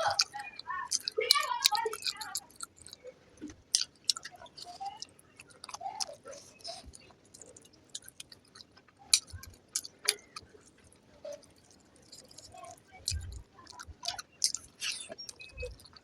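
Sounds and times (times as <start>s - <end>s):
person chewing food: 0.0s - 16.0s
wet mouth clicks and lip smacks: 3.7s - 10.4s.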